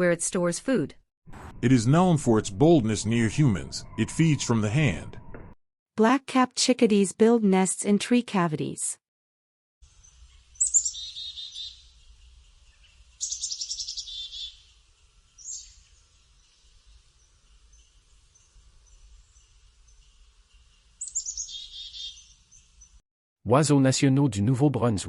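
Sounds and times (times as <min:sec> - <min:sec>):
chickadee calling: 0:09.9 - 0:23.0.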